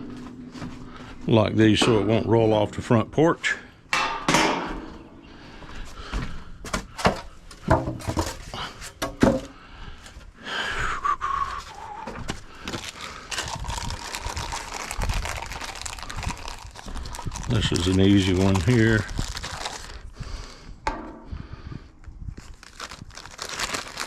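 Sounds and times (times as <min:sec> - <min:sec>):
scraping and rustling: 0:06.6 - 0:09.5
parts knocking and clacking: 0:06.7 - 0:09.6.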